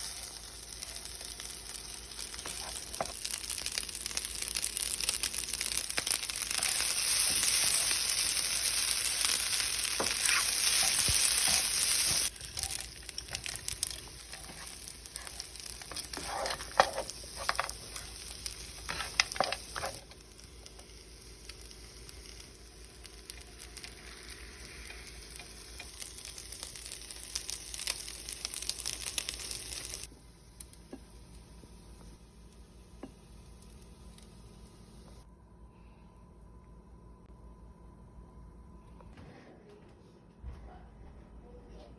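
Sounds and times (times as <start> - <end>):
rice sizzling in a hot pan: 0.0 - 35.3
spatula scraping a pan: 14.2 - 18.2.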